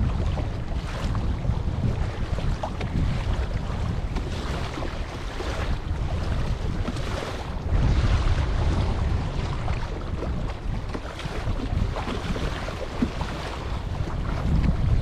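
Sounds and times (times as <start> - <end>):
water splashing against kayak hull: 0.0 - 15.0
wind buffeting microphone: 0.0 - 15.0.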